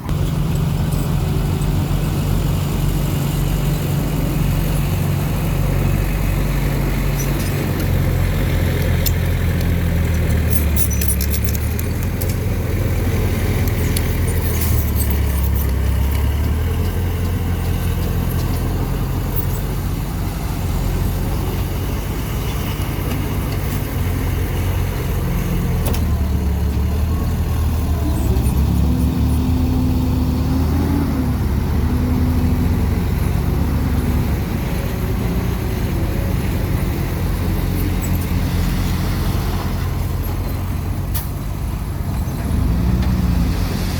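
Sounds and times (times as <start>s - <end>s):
large diesel engine under load: 0.0s - 43.9s
metallic clanks: 7.1s - 16.4s.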